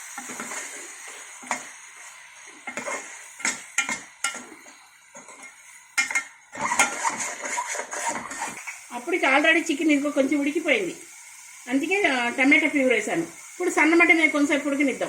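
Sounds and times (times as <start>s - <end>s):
spoon scraping a pan: 0.0s - 8.9s
light sizzle: 0.0s - 15.0s.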